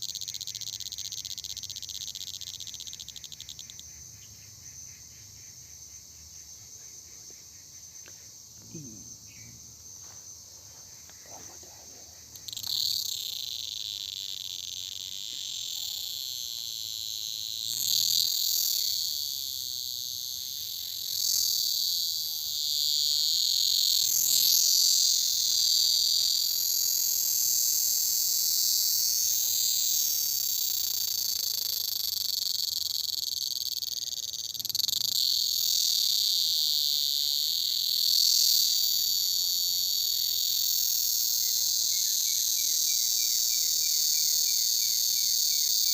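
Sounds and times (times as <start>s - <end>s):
crickets trilling: 0.0s - 45.9s.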